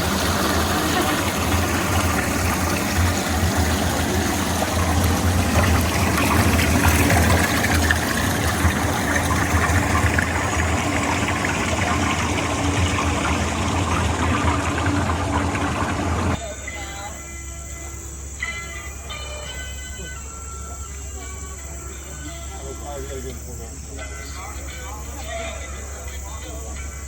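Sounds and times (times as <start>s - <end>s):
running water rushing: 0.0s - 16.4s
low hum: 0.0s - 22.6s.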